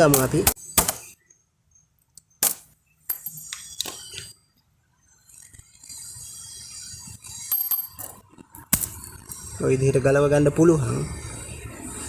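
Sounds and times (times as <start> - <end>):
chain clinking and rattling: 3.0 - 4.1, 7.2 - 9.5.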